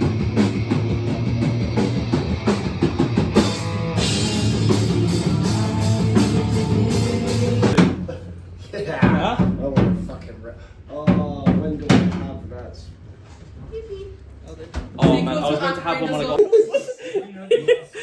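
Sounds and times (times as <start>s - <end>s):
rock music with drums and guitar: 0.0s - 8.1s.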